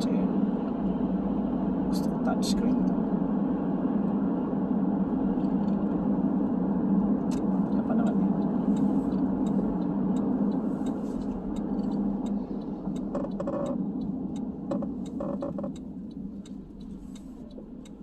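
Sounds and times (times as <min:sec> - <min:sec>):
car cabin hum: 0:00.0 - 0:18.0.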